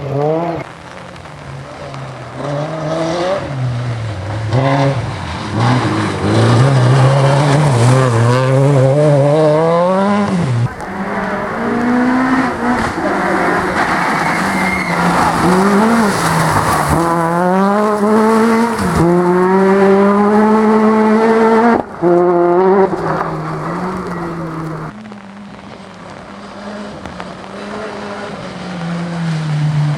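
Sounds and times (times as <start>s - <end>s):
rally car engines revving: 0.0s - 29.9s
tyres squealing: 10.6s - 19.6s, 22.0s - 24.9s.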